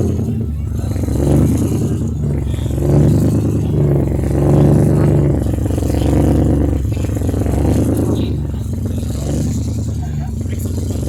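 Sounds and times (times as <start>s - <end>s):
rally car engine running: 0.0s - 11.0s.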